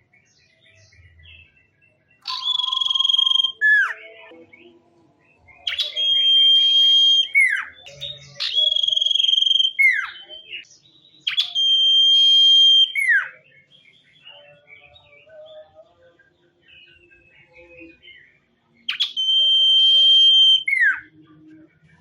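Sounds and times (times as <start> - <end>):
songbird high whistle: 2.2 - 3.9, 5.7 - 7.7, 8.4 - 10.2, 11.3 - 13.1, 18.9 - 21.0.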